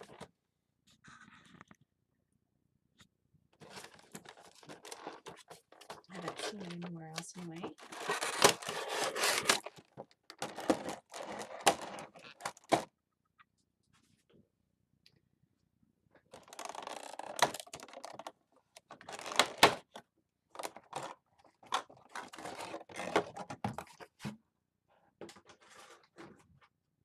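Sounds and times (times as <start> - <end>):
packaging rustling and crinkling: 3.6 - 12.8, 16.3 - 19.8, 20.6 - 24.1.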